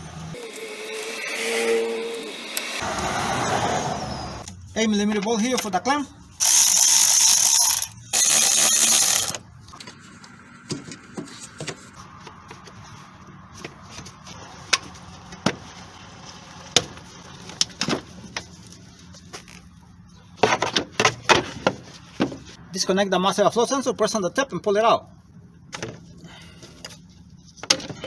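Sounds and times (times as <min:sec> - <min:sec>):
power driver spinning: 0:00.4 - 0:02.9, 0:06.4 - 0:09.4.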